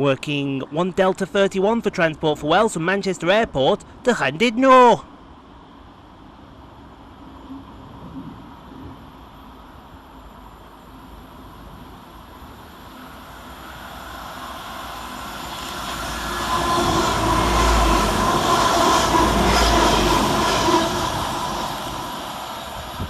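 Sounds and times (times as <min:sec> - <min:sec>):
diesel train engine: 0:01.2 - 0:23.0
train wheel noise: 0:05.2 - 0:23.0.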